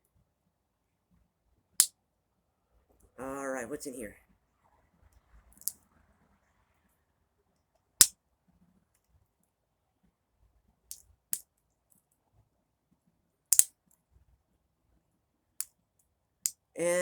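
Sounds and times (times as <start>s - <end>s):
pocket knife tools clicking: 13.5s - 13.7s.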